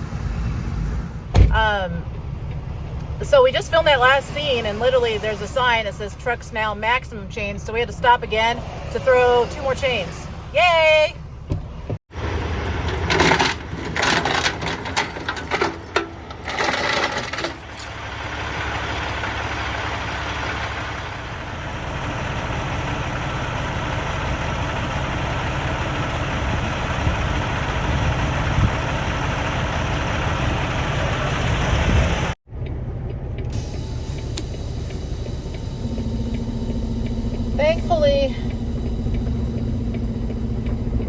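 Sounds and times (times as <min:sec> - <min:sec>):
diesel truck idling: 0:00.0 - 0:16.7, 0:17.5 - 0:41.0
metal chains clanking: 0:12.2 - 0:18.6.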